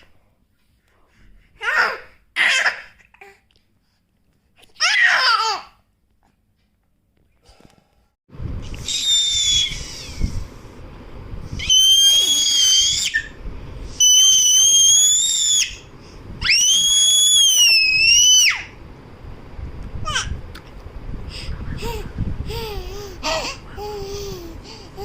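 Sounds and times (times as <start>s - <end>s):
baby squealing: 8.8s - 10.2s, 11.6s - 13.3s.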